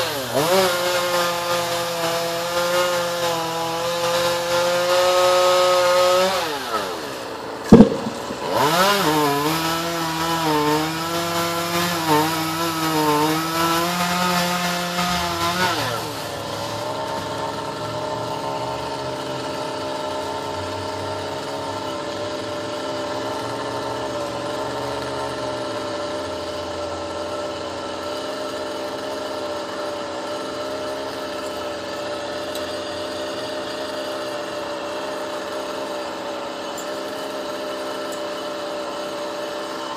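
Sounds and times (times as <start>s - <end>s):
chainsaw running: 0.0s - 39.9s
sharp loud knock: 7.7s - 9.2s.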